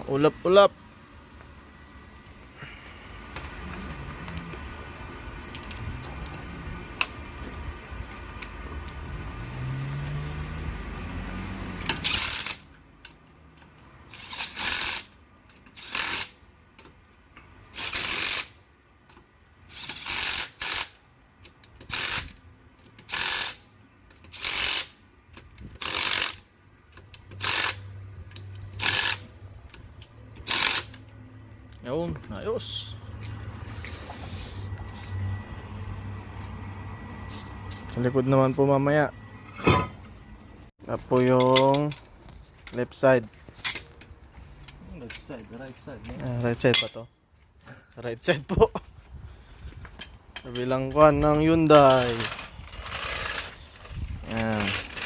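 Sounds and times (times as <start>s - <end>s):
steady mechanical hum: 0.0s - 55.0s
impact wrench bursts: 11.8s - 12.8s, 14.1s - 16.4s, 17.7s - 18.6s, 19.7s - 21.0s, 21.8s - 25.0s, 25.8s - 26.5s, 27.2s - 29.4s, 30.4s - 31.1s, 51.9s - 55.0s.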